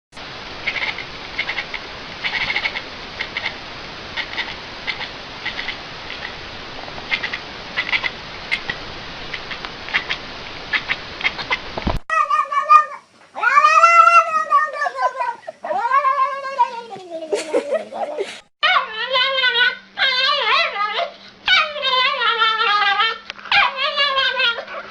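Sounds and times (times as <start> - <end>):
recording hiss: 0.2 - 18.5
cat yowling: 9.9 - 17.0, 18.6 - 24.8.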